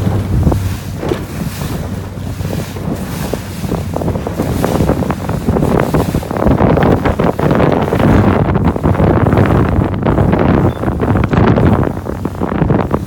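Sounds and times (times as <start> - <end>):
water splashing along boat hull: 0.0 - 13.0
wind buffeting microphone: 0.0 - 13.0.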